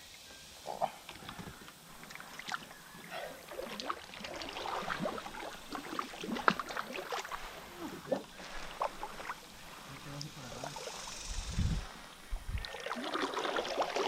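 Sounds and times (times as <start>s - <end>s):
water sloshing and lapping: 1.1s - 11.0s, 12.2s - 14.0s.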